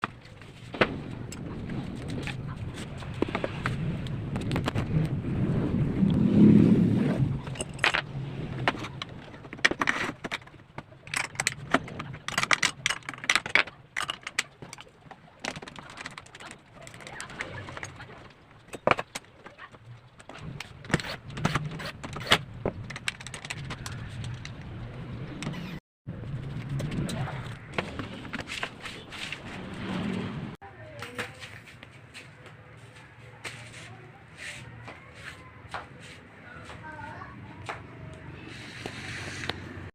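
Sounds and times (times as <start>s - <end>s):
low rumble: 0.9s - 9.5s
tools and wood knocking: 7.5s - 16.6s.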